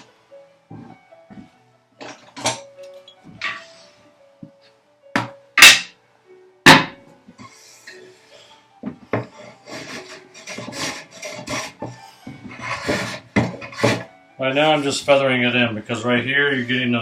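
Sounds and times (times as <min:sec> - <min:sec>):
rasping strokes: 0:09.2 - 0:14.1
hand tool strokes on wood: 0:09.2 - 0:15.1.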